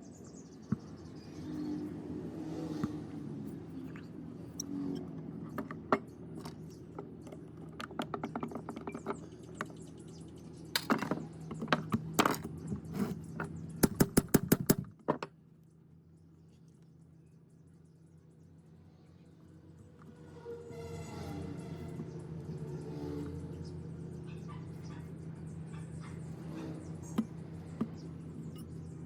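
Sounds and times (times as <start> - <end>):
steady low hum: 15.5 - 29.0.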